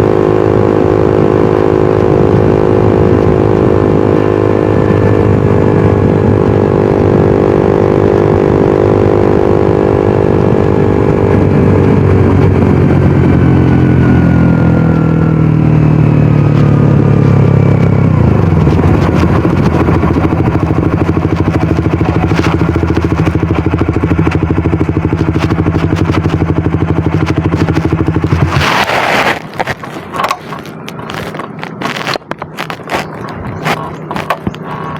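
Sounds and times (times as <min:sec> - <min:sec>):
motorcycle engine idling: 0:14.8 - 0:28.6.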